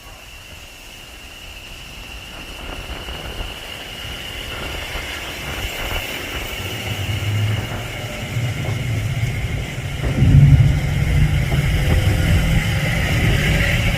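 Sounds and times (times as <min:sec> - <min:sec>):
train approaching: 0:00.0 - 0:13.9
high-pitched whine: 0:04.6 - 0:13.9
low hum: 0:06.3 - 0:13.9.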